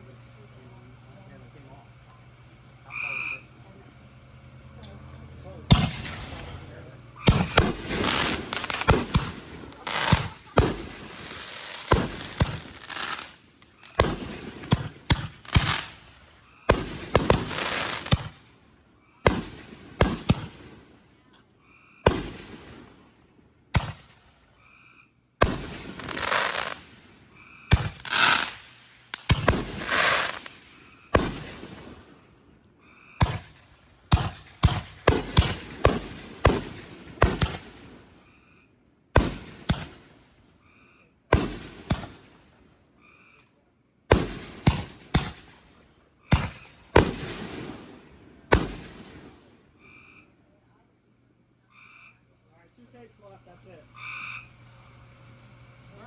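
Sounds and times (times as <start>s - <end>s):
fireworks crackling hiss: 0.0s - 21.3s, 22.0s - 24.6s, 25.4s - 32.6s, 33.2s - 38.3s, 39.1s - 40.5s, 41.3s - 42.7s, 44.0s - 49.8s, 52.4s - 56.0s
fireworks bangs: 5.4s - 18.6s, 19.2s - 21.0s, 22.0s - 23.1s, 23.7s - 24.6s, 25.4s - 32.4s, 33.2s - 38.2s, 39.1s - 40.3s, 41.3s - 42.5s, 44.1s - 49.6s.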